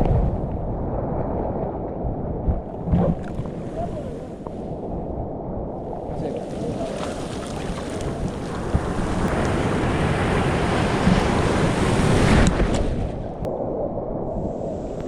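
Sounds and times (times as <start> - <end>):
wind buffeting microphone: 0.0 - 15.0
surf washing up shore: 2.8 - 5.0, 5.8 - 15.0.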